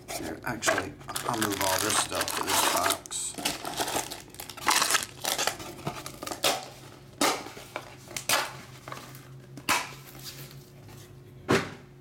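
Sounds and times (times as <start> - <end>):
packaging rustling: 1.0 - 6.8.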